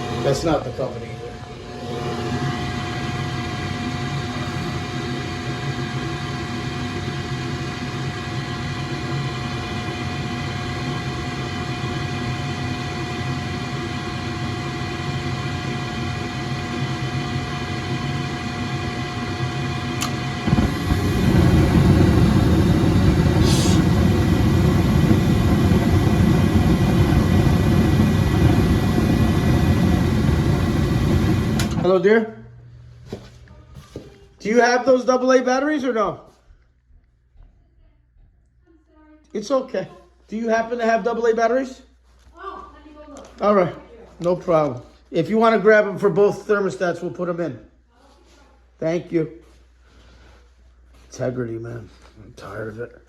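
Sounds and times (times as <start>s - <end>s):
machine hum: 0.0s - 33.2s
loud low rumble: 20.4s - 31.3s.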